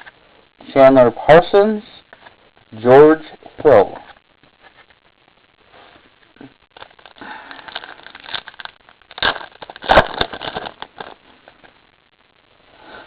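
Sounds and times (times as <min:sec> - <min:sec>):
trading cards rustling in foil pack: 0:06.7 - 0:11.7.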